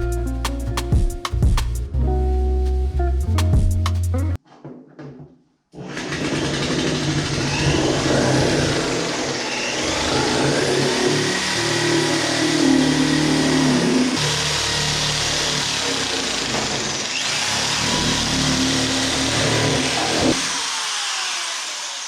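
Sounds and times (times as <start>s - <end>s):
power tool motor running: 5.8s - 22.0s.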